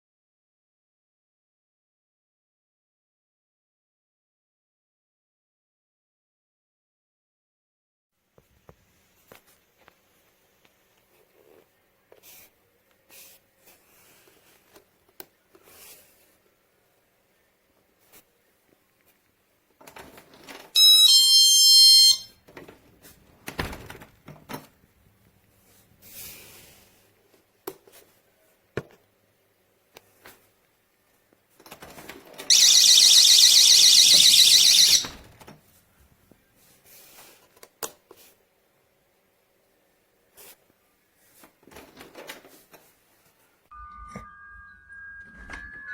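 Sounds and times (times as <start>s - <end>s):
electronic alarm chime: 20.8s - 22.3s, 32.5s - 35.2s, 43.7s - 45.9s
shrill warbling alarm siren: 20.8s - 22.3s, 32.5s - 35.2s.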